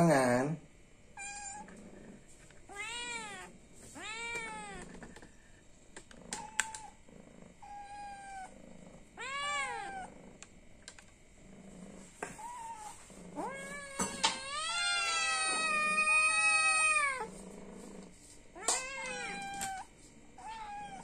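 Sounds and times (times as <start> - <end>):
cat meowing: 1.2 - 1.7, 2.7 - 5.0, 6.3 - 7.0, 7.6 - 8.5, 9.2 - 10.1, 12.3 - 17.3, 18.6 - 21.0.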